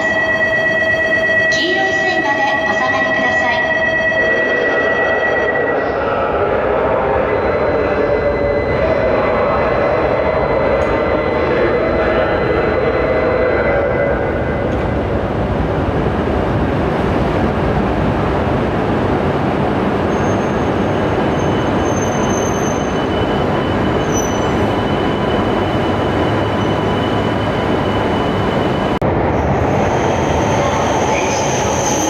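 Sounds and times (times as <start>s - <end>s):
train wheels and motors rumbling: 8.1s - 32.0s.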